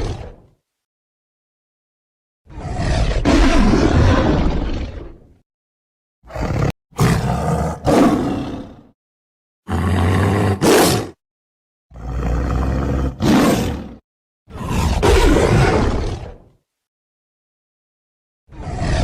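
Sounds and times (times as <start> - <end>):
tiger roaring: 0.0 - 0.4, 2.5 - 5.3, 6.3 - 9.0, 9.7 - 11.2, 11.9 - 16.4, 18.5 - 19.0.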